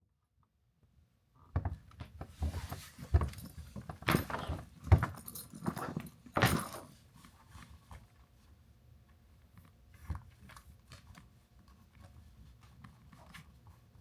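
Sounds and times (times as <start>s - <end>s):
handling knocks and rustles: 1.6s - 8.4s.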